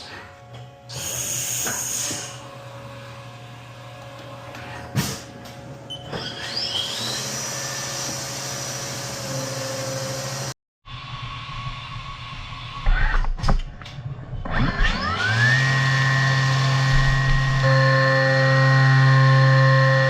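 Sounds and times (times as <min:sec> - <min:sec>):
machine hum: 0:14.0 - 0:20.0
spindle whine: 0:14.3 - 0:20.0.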